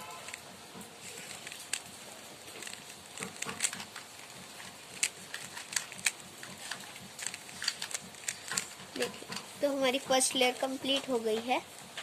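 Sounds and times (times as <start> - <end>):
puzzle cube turning clicks: 1.0 - 9.5.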